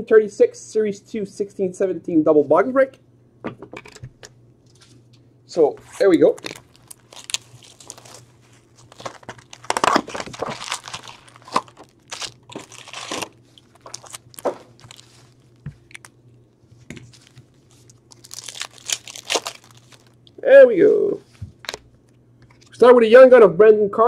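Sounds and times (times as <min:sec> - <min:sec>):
packaging tearing and crinkling: 0:05.9 - 0:16.2, 0:17.0 - 0:20.4.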